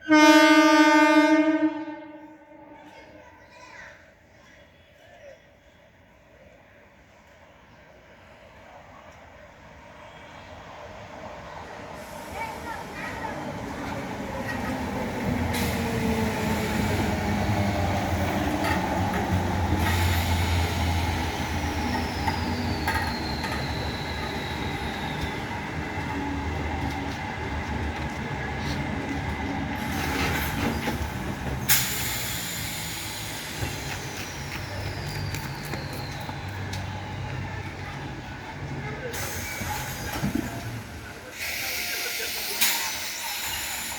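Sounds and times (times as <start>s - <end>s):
train rumbling on rails: 7.0s - 43.9s
high wheel squeal: 19.8s - 25.7s, 31.7s - 37.0s.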